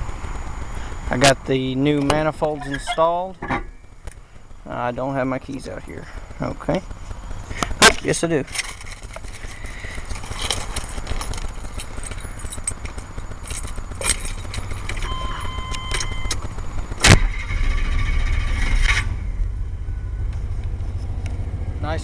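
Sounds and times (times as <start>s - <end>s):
truck engine cranking and idling: 0.0s - 22.0s
keys jingling: 8.5s - 16.2s
short steady beep: 15.0s - 16.4s.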